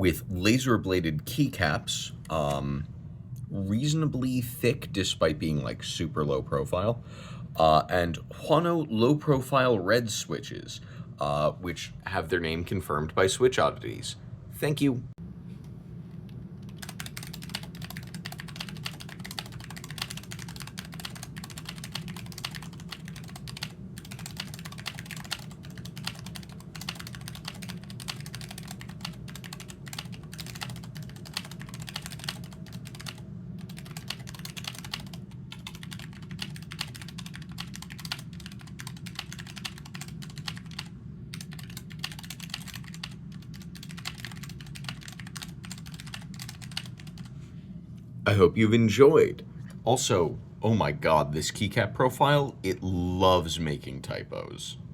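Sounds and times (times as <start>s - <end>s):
mechanical keyboard typing: 16.7s - 47.3s.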